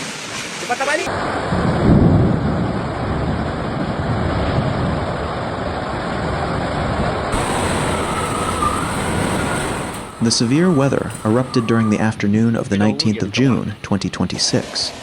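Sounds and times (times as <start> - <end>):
wind buffeting microphone: 6.2 - 12.7.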